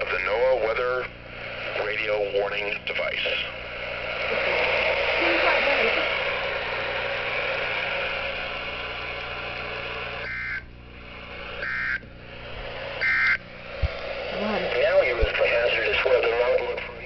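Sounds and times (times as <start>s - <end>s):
radio receiver hiss: 0.0s - 17.0s
screeching digital data bursts: 10.2s - 10.7s, 11.6s - 12.0s, 12.9s - 13.5s.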